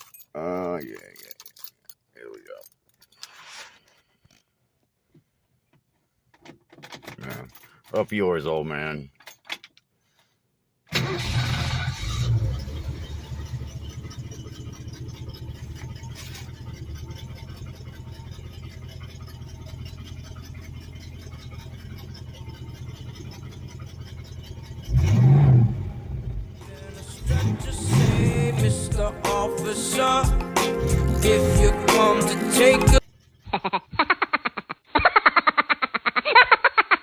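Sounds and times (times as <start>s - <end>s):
engine starting and idling: 10.9s - 30.2s
engine revving: 11.0s - 33.0s.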